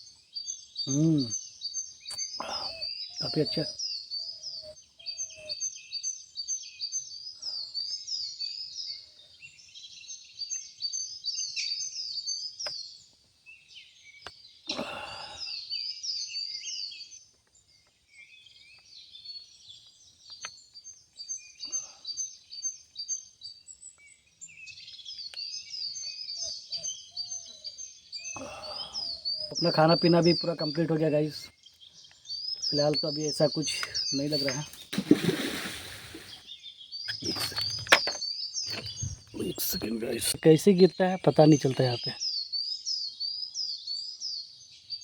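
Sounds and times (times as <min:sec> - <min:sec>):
chorus of high chirping calls: 0:02.1 - 0:06.0, 0:25.8 - 0:44.9
short rustle: 0:34.3 - 0:36.4.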